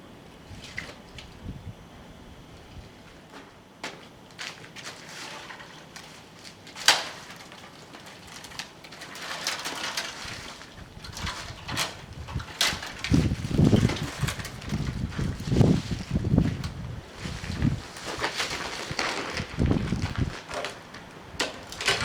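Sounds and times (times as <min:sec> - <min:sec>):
wind buffeting microphone: 0:00.4 - 0:03.0, 0:10.2 - 0:22.0
branches rustling: 0:02.4 - 0:22.0
loud branch crack: 0:03.8 - 0:10.7, 0:11.7 - 0:22.0
twigs snapping: 0:03.8 - 0:10.7, 0:11.7 - 0:22.0.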